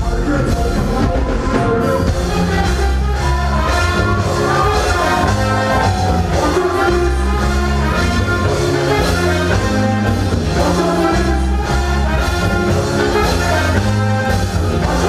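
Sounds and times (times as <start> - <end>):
live reggae band playing: 0.0 - 15.0.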